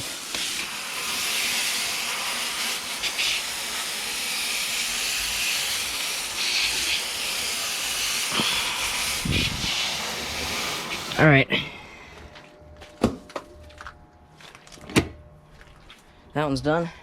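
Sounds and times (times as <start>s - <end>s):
hose spray hissing on metal fins: 0.0s - 11.3s.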